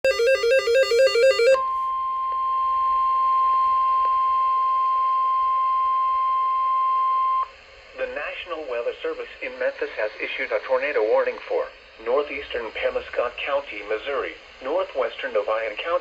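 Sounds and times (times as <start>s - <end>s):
steady alarm tone: 0.0s - 1.8s.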